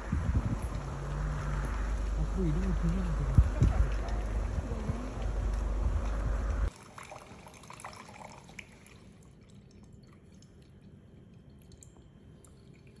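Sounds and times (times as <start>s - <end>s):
wind buffeting microphone: 0.0s - 6.7s
liquid dripping: 0.6s - 13.0s.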